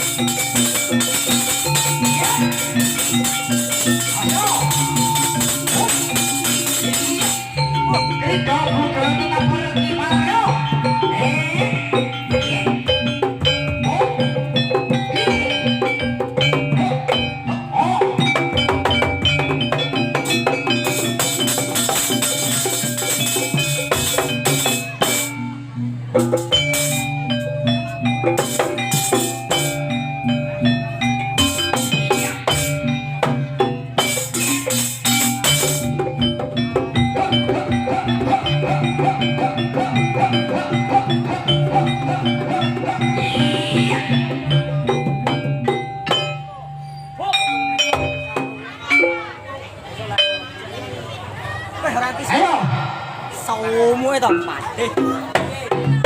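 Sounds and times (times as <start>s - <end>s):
bright clashing: 0.0s - 7.9s
drumming: 0.0s - 49.2s, 51.3s - 56.0s
gongs: 0.0s - 49.4s, 52.2s - 56.0s
metal-bar instruments ringing melody: 0.0s - 56.0s.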